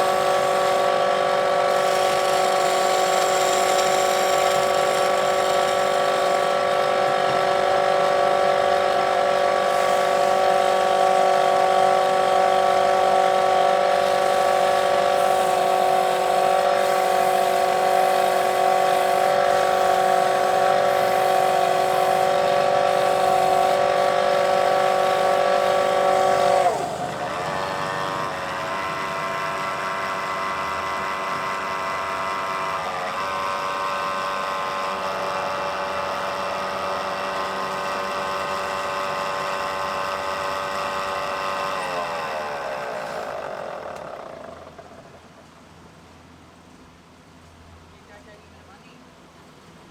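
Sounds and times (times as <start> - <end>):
wood lathe whining: 0.0 - 45.4
cutting hiss: 13.6 - 28.5.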